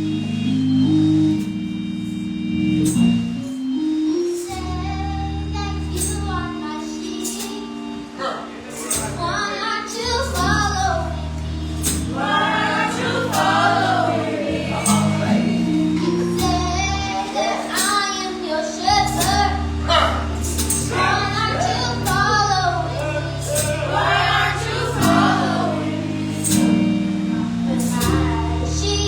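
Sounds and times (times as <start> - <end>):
voices singing gospel: 6.0 - 29.0
sharp percussion hits: 11.6 - 18.3, 19.0 - 26.9.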